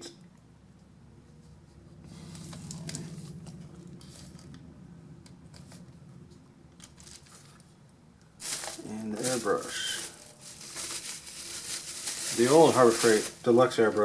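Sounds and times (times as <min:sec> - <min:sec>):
low rumble: 0:01.4 - 0:08.2.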